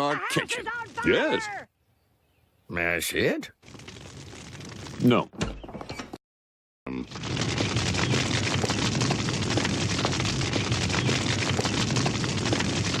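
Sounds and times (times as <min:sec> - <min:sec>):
large fire roaring and crackling: 0:03.6 - 0:05.2, 0:06.9 - 0:13.0.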